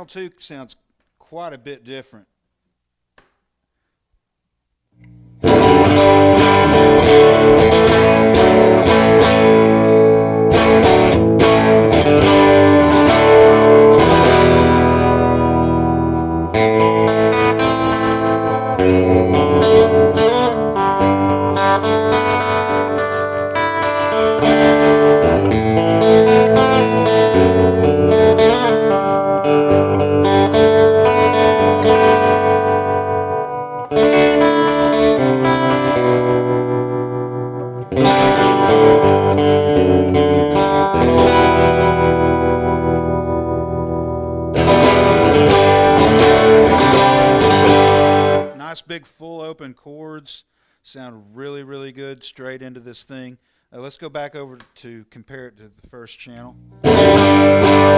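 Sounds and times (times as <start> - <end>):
electric guitar strumming open chords: 5.0 - 48.8, 56.3 - 57.9.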